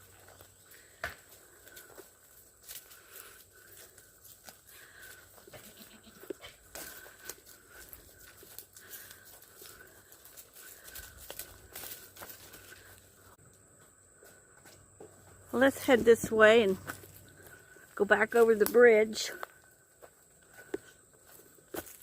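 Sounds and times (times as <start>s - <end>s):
goats bleating faintly: 5.5s - 6.5s.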